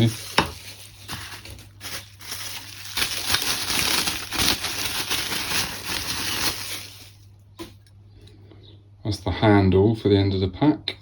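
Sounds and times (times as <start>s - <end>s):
packaging crinkling and rustling: 0.0s - 7.8s.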